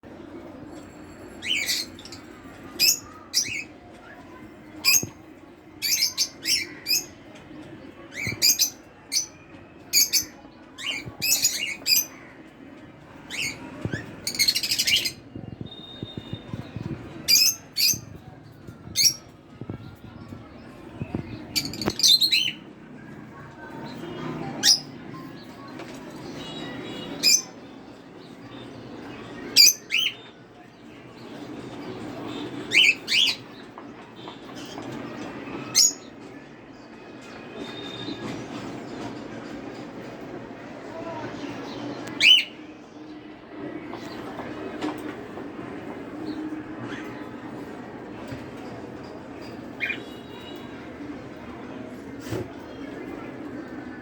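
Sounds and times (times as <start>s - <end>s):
pet birds chirping: 13.2s - 22.7s.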